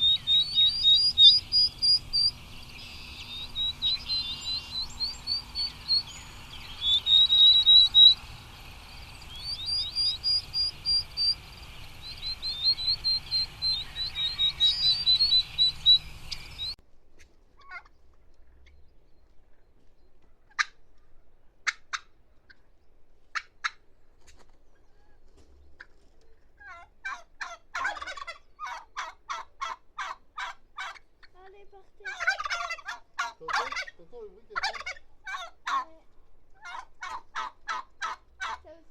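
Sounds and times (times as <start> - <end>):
low background rumble: 0.0 - 16.8
turkey calling: 0.0 - 16.8, 17.6 - 17.9, 26.6 - 31.4, 32.0 - 36.0, 36.6 - 38.8
turkey rattling call: 0.0 - 16.8, 26.6 - 31.3, 32.1 - 35.9, 36.6 - 38.6
songbird chirping: 0.0 - 23.1, 23.9 - 38.9.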